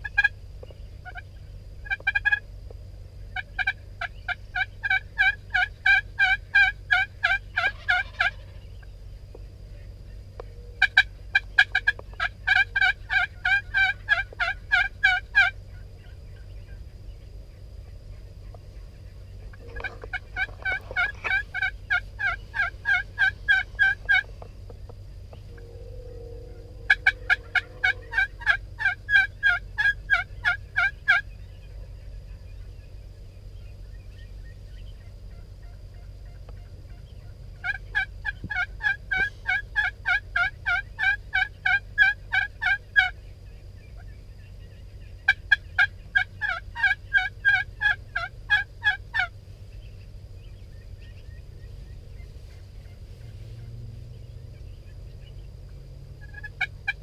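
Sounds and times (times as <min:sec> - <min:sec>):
turkey yelping: 0:00.0 - 0:00.3, 0:01.0 - 0:02.4, 0:03.4 - 0:08.9, 0:10.8 - 0:16.2, 0:19.5 - 0:24.5, 0:25.3 - 0:31.8, 0:35.0 - 0:43.2, 0:45.2 - 0:49.3, 0:56.2 - 0:57.0
turkey low held call: 0:01.0 - 0:02.4, 0:03.3 - 0:08.9, 0:10.4 - 0:16.9, 0:19.4 - 0:32.7, 0:34.8 - 0:43.2, 0:43.9 - 0:49.3.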